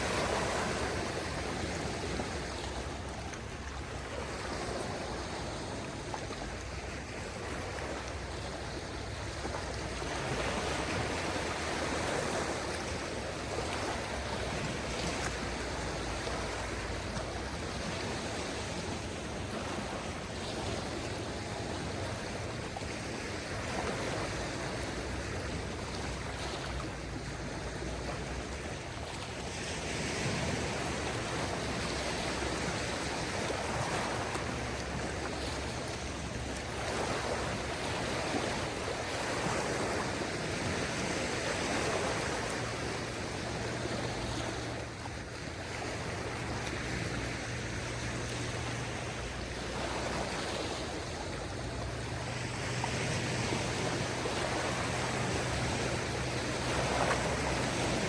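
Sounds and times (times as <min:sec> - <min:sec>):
small waves washing onto shore: 0:00.0 - 0:58.0.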